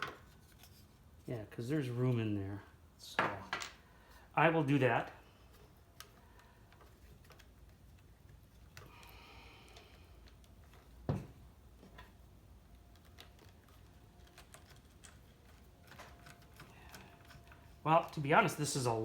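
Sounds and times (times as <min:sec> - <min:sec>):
wires and plastic parts clicking: 0:05.0 - 0:19.0.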